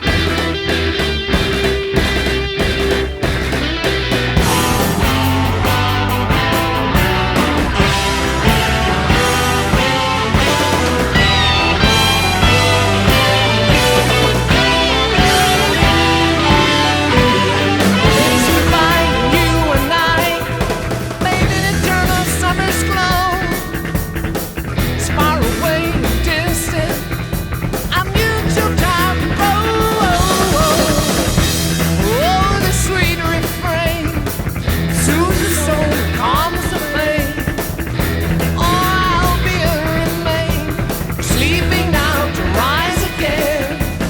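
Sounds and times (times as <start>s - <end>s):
sung melody: 0.1s - 22.3s.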